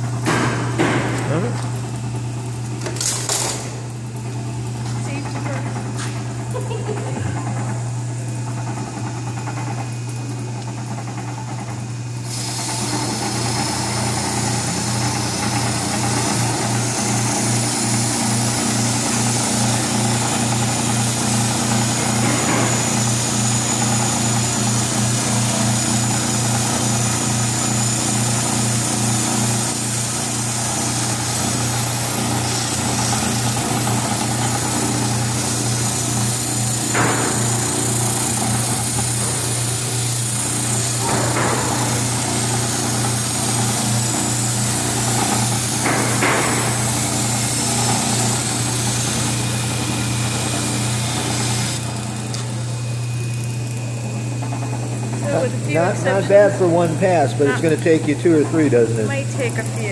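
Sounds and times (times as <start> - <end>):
grinder motor humming: 0.0 - 59.9
grinding wheel on metal: 12.7 - 52.5, 53.7 - 59.9.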